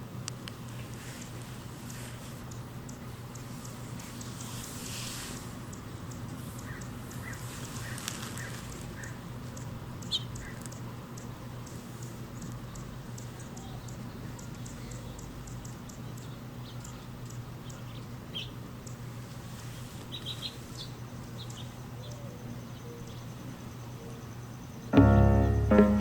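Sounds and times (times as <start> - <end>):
hummingbird chip notes and chirps: 20.8 - 26.0.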